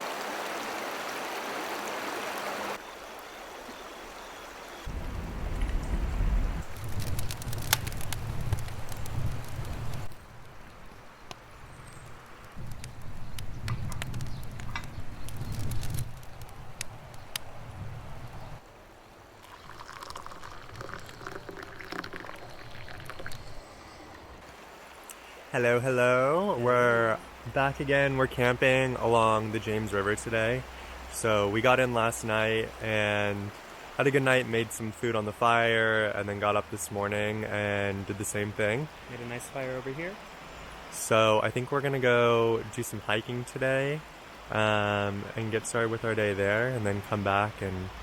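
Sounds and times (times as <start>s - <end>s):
river water rushing: 0.0s - 6.6s, 24.4s - 37.3s, 37.9s - 44.6s
wind on microphone: 4.9s - 10.1s, 11.7s - 18.6s
liquid pouring into container: 19.4s - 23.6s.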